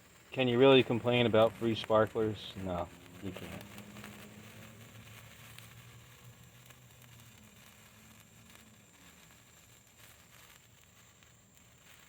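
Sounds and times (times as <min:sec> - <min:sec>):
sparkler crackling and fizzing: 0:00.0 - 0:12.0.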